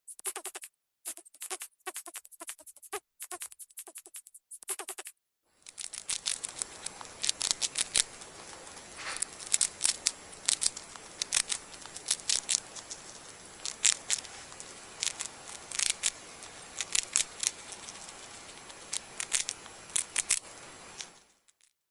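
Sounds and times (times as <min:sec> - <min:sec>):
faint steady hiss: 0:05.5 - 0:21.4
mouse crunching food: 0:05.6 - 0:21.7.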